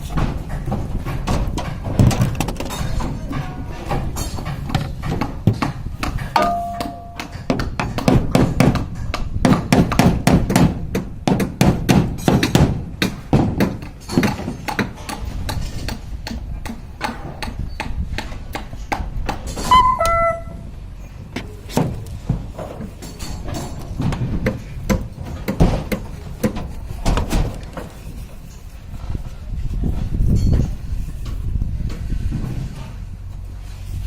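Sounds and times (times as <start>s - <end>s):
hammer knocking: 4.7s - 20.2s
short high tone: 19.7s - 20.6s.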